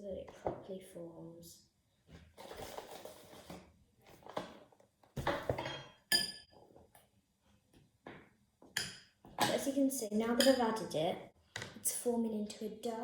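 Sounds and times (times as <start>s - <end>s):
spoon clinking on bowl: 5.7s - 6.5s.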